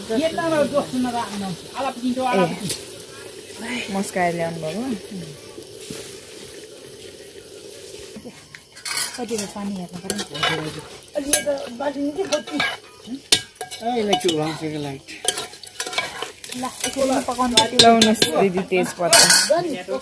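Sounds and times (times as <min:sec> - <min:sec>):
food sizzling: 0:00.0 - 0:20.0
spoon scraping in a pot: 0:08.5 - 0:11.6, 0:12.2 - 0:18.5
utensils clinking: 0:08.6 - 0:20.0.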